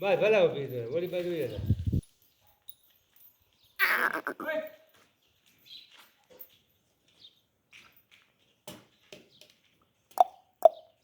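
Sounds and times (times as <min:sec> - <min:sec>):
brief chirp-like calls: 0:03.8 - 0:04.5.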